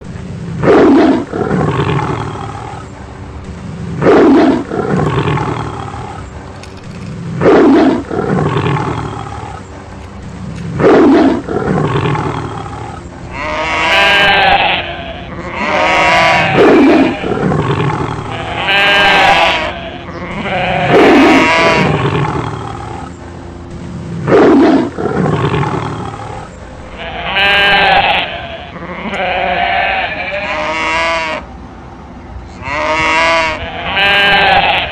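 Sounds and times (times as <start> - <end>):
lion roaring: 0.6 - 2.9, 4.0 - 23.1, 24.2 - 28.0
sheep bleating: 13.3 - 22.5, 26.9 - 31.4, 32.6 - 34.9.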